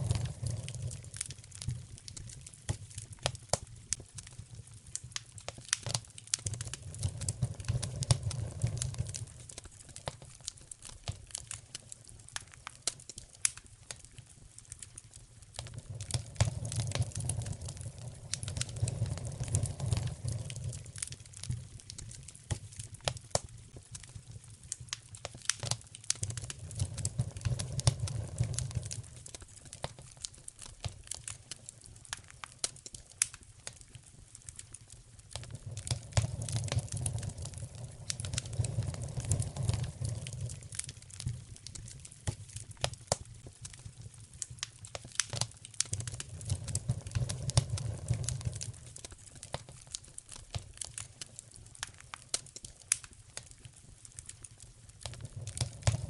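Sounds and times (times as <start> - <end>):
wood fire crackling and popping: 0.0 - 56.0.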